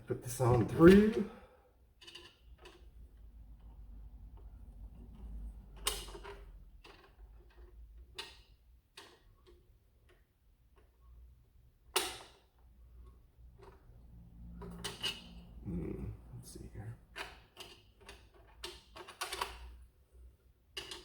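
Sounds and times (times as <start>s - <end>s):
plastic toy parts clicking: 5.2s - 10.2s, 17.2s - 19.7s, 20.8s - 21.0s.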